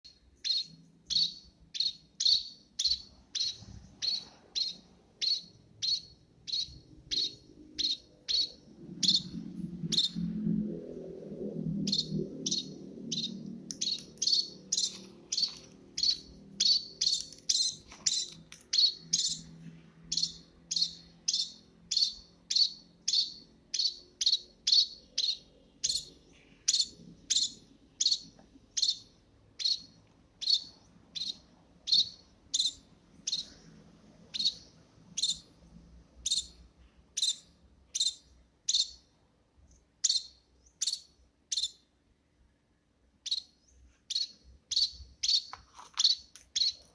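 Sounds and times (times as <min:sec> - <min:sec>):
small bird chirping: 0:00.0 - 0:42.0, 0:43.1 - 0:46.9.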